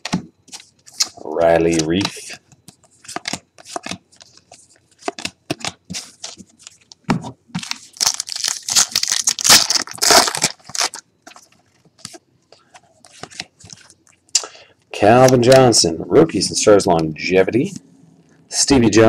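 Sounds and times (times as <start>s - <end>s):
cards clicking and rustling: 0.0s - 14.0s
wrappers tearing and crinkling: 7.6s - 11.5s.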